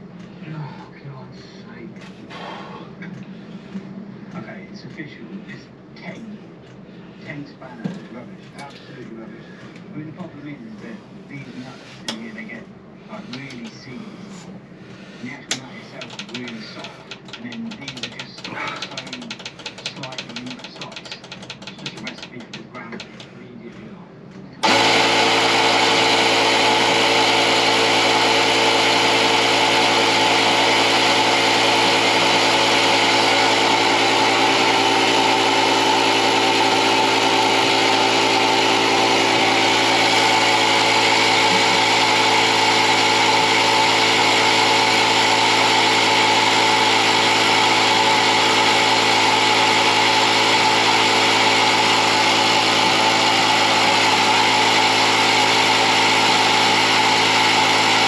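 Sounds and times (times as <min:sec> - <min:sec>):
electric air compressor running: 0:02.2 - 0:03.8, 0:10.8 - 0:23.3, 0:24.6 - 0:58.0.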